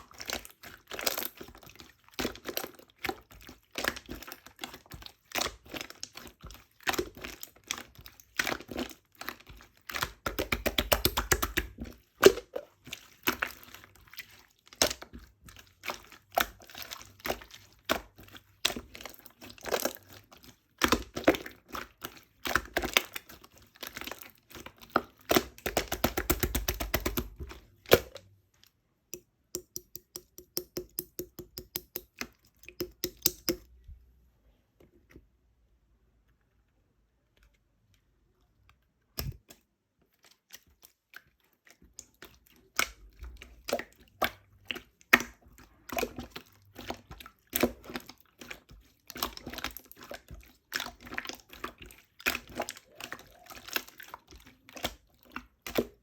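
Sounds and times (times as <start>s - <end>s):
small objects clicking and knocking: 29.6s - 33.7s.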